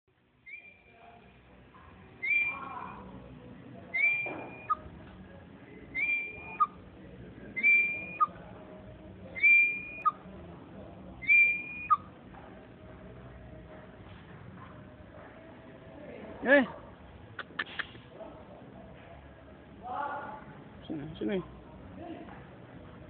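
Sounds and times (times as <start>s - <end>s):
parrot whistling two-note phrase: 2.2s - 2.7s, 4.0s - 4.8s, 6.0s - 6.7s, 7.6s - 8.3s, 9.4s - 10.1s, 11.2s - 12.0s.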